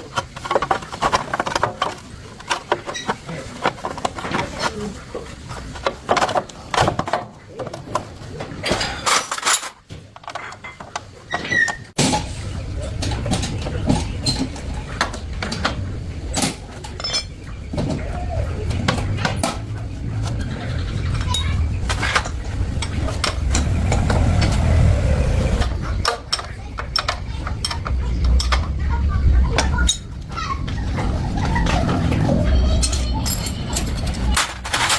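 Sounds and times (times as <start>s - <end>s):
steady low rumble: 12.0s - 16.2s, 18.4s - 26.1s
metal tools clinking: 32.8s - 34.9s.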